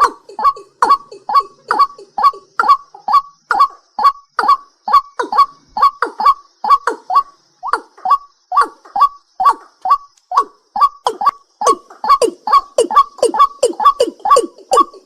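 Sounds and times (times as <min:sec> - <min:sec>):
night bird calling: 0:00.0 - 0:15.0.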